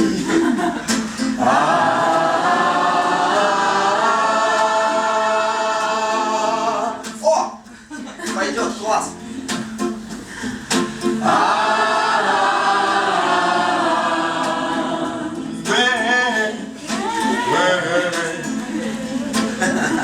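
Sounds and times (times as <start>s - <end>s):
group singing a cappella: 0.0s - 7.2s, 10.9s - 20.0s
voice wavering through sung line: 11.2s - 19.4s.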